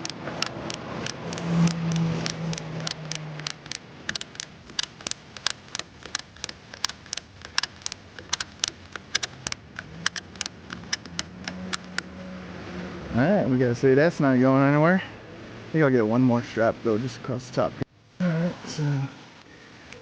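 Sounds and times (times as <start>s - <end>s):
ratchet strap clicking: 0.0s - 12.1s.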